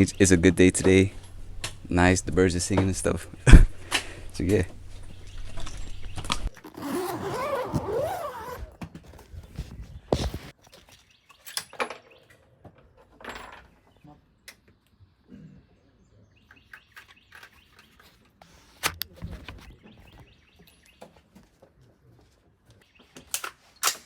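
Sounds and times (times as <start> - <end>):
bird chirping: 0.0 - 7.6.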